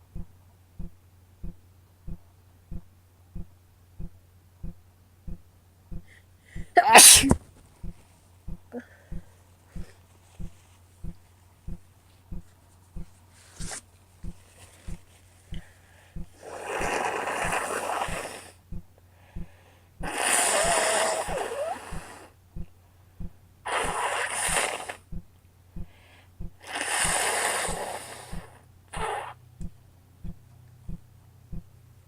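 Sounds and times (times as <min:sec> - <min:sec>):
steady low ticking: 0:00.0 - 0:06.8, 0:07.8 - 0:13.2, 0:14.2 - 0:16.4, 0:17.4 - 0:24.0, 0:25.1 - 0:26.6, 0:29.5 - 0:32.0
woman blowing her nose: 0:06.8 - 0:07.4, 0:16.4 - 0:18.6, 0:20.0 - 0:22.3, 0:23.7 - 0:25.0, 0:26.6 - 0:29.4.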